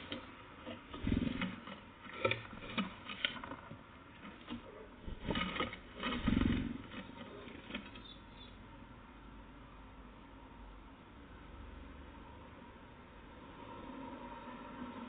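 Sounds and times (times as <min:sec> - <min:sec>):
birds pecking at a feeder: 0:00.0 - 0:08.5.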